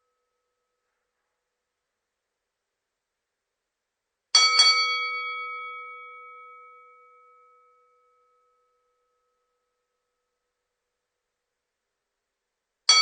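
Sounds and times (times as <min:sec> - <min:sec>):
boxing ring bell ringing: 0:04.4 - 0:09.4.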